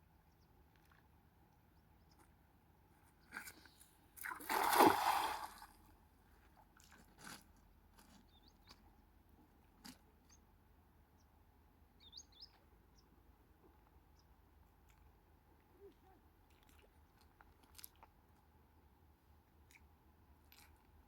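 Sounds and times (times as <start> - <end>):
water splash: 4.2 - 5.8.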